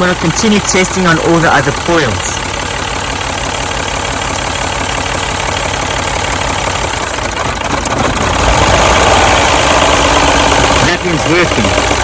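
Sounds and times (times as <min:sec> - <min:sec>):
car engine idling with misfire: 0:00.0 - 0:12.0.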